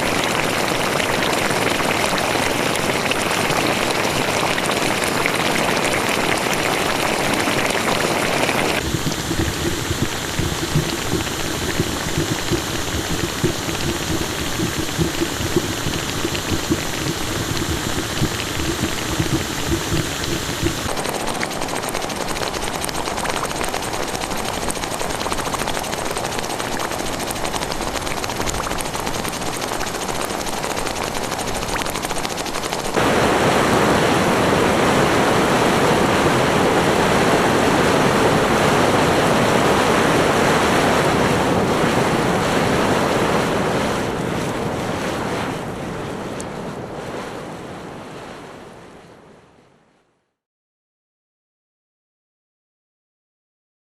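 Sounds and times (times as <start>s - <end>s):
boiling mud bubbling: 0.0s - 33.6s
hissing steam: 7.0s - 21.2s.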